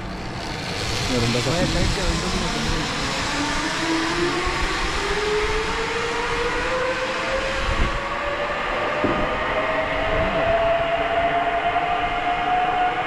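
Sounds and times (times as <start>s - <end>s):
low rumbling noise: 0.0s - 6.1s
zipline pulleys whining on cable: 0.0s - 13.0s.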